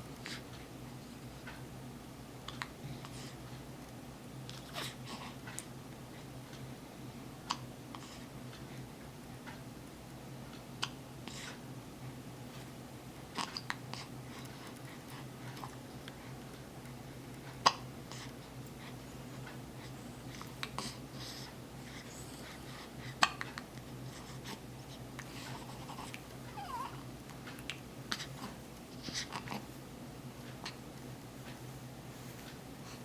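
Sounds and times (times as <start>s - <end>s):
steady low hum: 0.0s - 33.0s.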